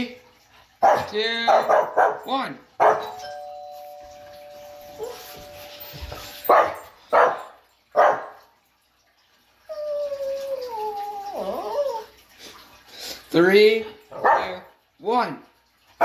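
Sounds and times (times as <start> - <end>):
dog barking: 0.8 - 3.2, 6.4 - 8.4, 14.2 - 14.6
two-tone doorbell chime: 3.1 - 6.8
dog whining howl: 9.7 - 12.2.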